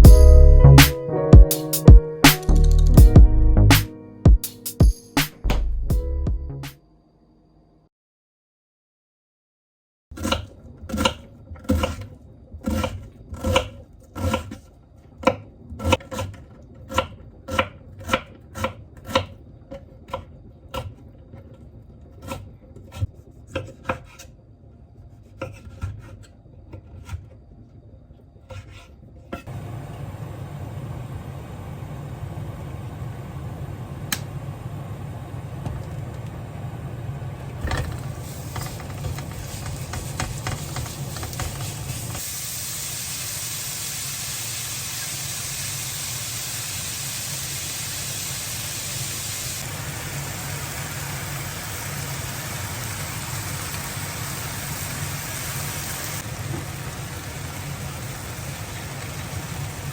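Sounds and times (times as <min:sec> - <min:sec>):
knife scraping against board: 0:25.2 - 0:27.3, 0:28.4 - 0:29.5
steady hiss with low hum: 0:29.5 - 0:59.9.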